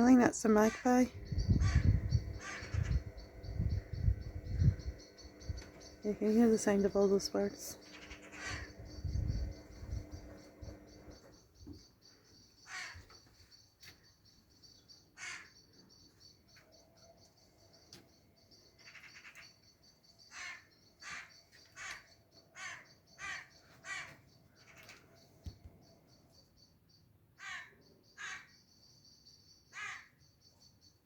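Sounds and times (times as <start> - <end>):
harsh rasping corvid calls: 0.6 - 3.5, 7.8 - 9.8.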